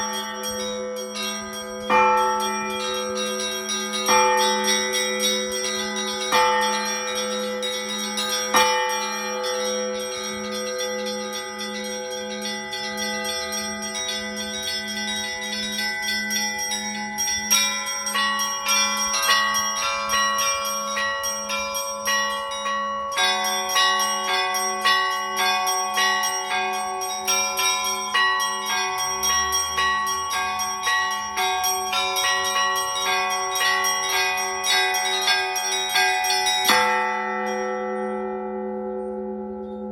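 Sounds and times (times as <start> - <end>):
large bell humming: 0.0 - 39.9
small church bells striking: 0.0 - 39.9.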